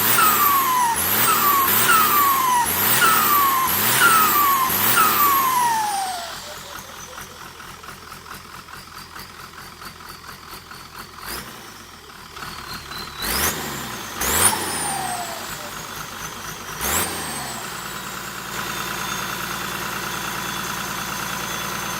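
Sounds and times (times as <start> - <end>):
turbo whistle: 0.0 - 7.4
diesel engine revving: 0.0 - 21.9.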